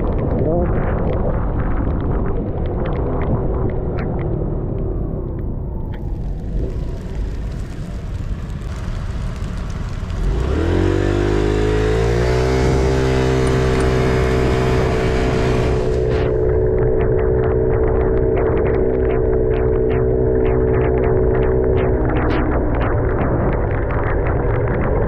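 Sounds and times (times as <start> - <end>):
scooter engine: 10.3 - 17.7.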